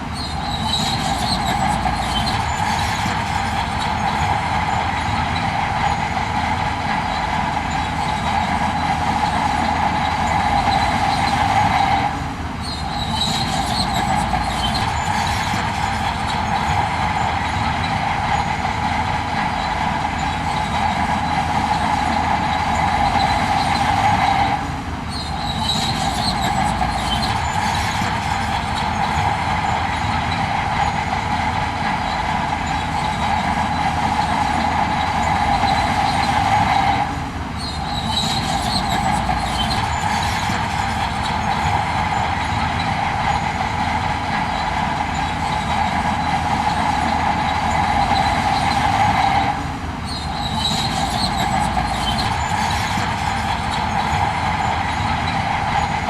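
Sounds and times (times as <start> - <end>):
heavy machinery engine drone: 0.0 - 56.0
metallic squeaking: 0.0 - 56.0.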